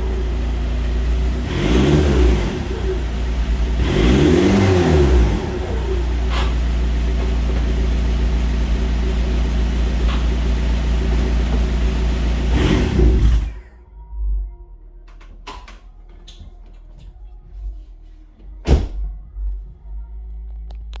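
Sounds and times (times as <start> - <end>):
diesel engine idling and revving: 0.0 - 15.2.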